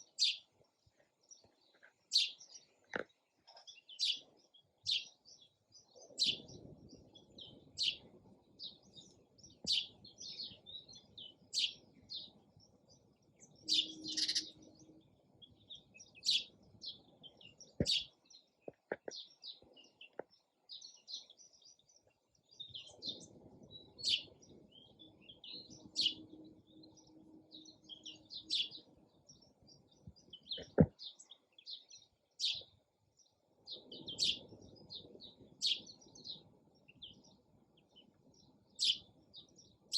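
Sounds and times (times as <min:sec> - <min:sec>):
sparrow chirping: 0:00.0 - 0:39.9.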